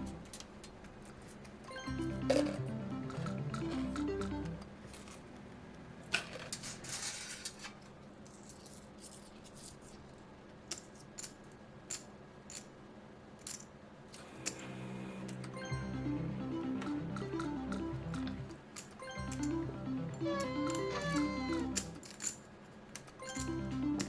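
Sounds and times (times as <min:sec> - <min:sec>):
electronic melodic tones: 0:01.7 - 0:04.7, 0:15.6 - 0:22.0, 0:23.3 - 0:24.0.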